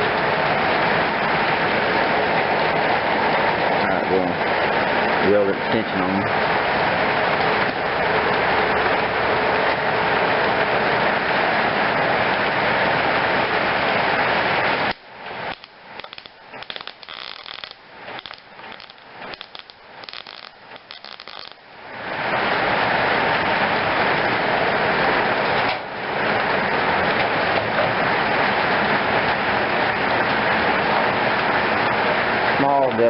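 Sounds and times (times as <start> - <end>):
electric welder crackling: 14.6 - 21.9
faint clicks and ticks: 14.9 - 21.6.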